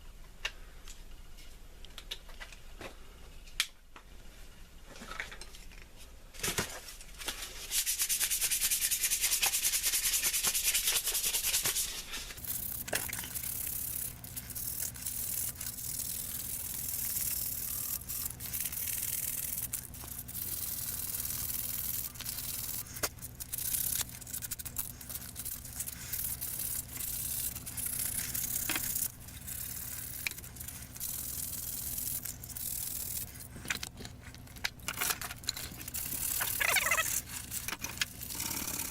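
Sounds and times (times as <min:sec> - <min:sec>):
steady low hum: 0:12.1 - 0:38.9.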